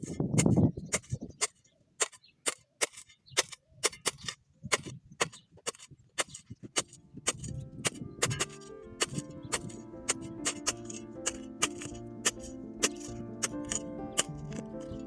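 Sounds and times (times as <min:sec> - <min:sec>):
grass trimmed by hand: 0:00.0 - 0:15.0.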